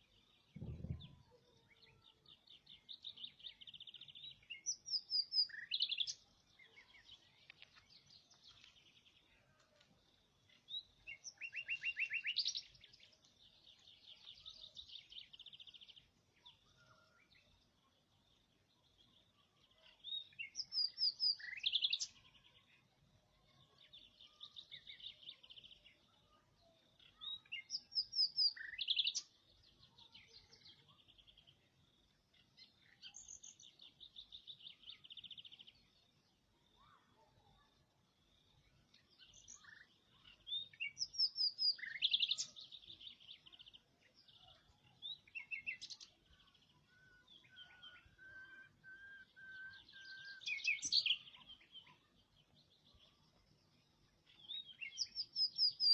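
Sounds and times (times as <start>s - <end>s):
small songbird singing: 0.0s - 55.9s.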